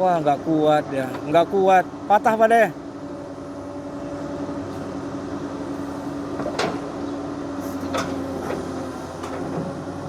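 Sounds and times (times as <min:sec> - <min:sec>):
excavator diesel engine running: 0:00.0 - 0:10.0.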